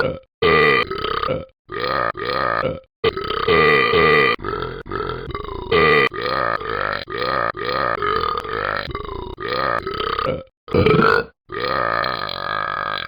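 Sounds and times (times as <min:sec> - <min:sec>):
person burping: 0:00.0 - 0:13.0.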